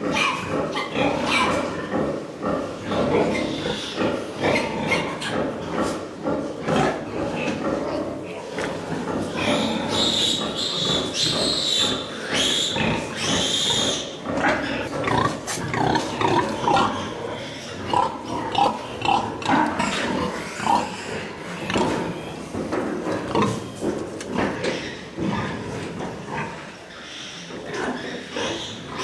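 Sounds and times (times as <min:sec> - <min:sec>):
pigs squealing: 0:00.0 - 0:06.1, 0:06.7 - 0:22.5, 0:23.2 - 0:29.0
pigs grunting: 0:00.0 - 0:29.0.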